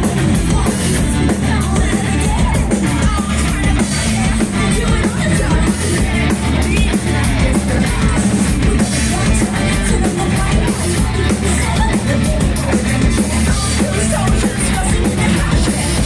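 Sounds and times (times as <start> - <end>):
live rock band playing: 0.0 - 16.0.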